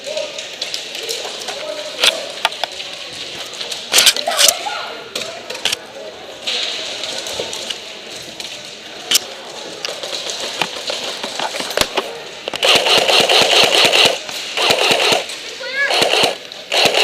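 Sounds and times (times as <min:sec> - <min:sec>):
airsoft rifle full-auto burst: 0:12.6 - 0:17.0.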